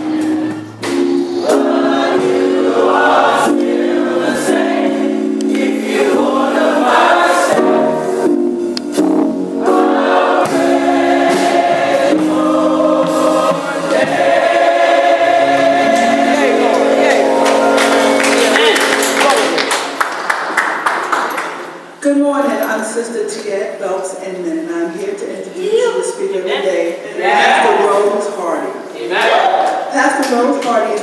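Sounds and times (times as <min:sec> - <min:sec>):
gospel choir singing: 0:00.0 - 0:20.1, 0:27.0 - 0:29.9.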